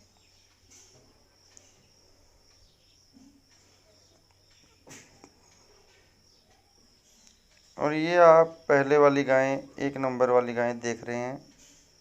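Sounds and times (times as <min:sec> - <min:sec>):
cricket chirring: 0:00.0 - 0:12.0.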